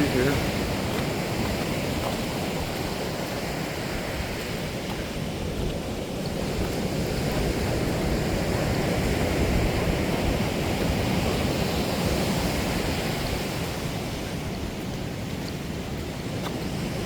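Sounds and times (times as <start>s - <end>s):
ocean surf rushing: 0.0s - 17.0s
wind: 0.0s - 17.0s.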